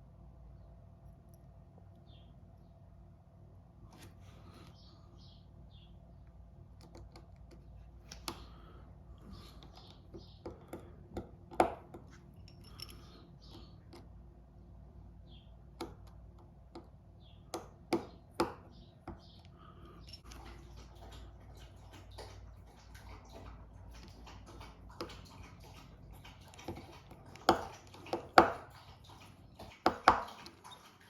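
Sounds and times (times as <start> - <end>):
small clicks and taps of tools: 6.8 - 8.5.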